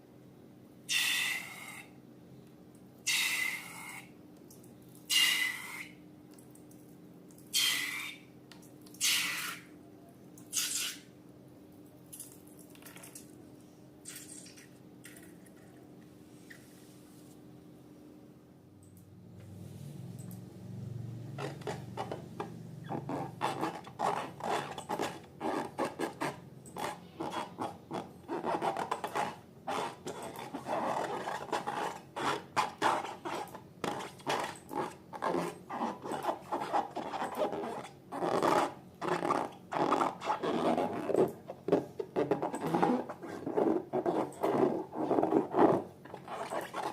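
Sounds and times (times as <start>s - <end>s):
slime squelching: 21.4s - 46.9s.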